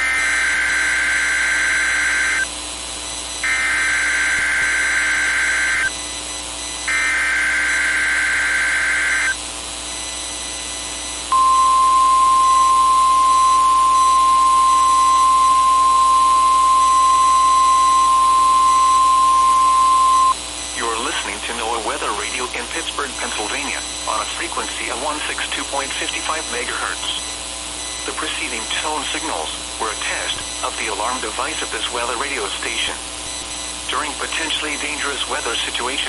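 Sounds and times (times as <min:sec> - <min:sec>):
two-tone digital data squeals: 0:00.0 - 0:02.5, 0:03.5 - 0:06.1, 0:06.8 - 0:09.4, 0:11.3 - 0:20.4
steady warning alarm tone: 0:00.0 - 0:21.2.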